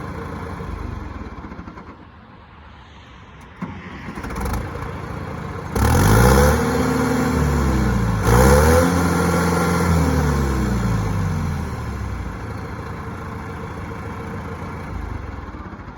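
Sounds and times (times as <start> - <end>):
diesel engine revving: 0.0 - 2.0, 3.6 - 15.9.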